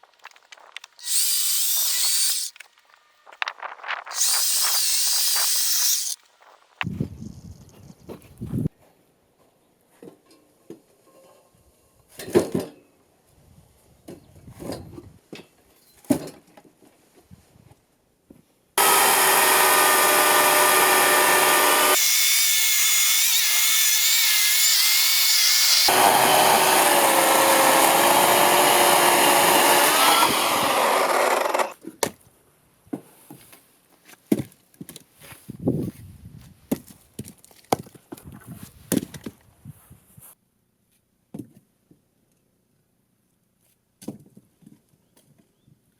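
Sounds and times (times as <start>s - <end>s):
power saw cutting wood: 1.0s - 2.6s, 4.1s - 6.2s, 18.8s - 31.8s.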